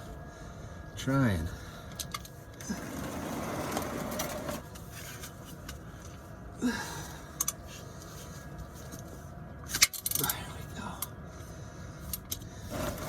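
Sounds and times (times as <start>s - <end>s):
wrench handling noises: 9.7s - 10.4s.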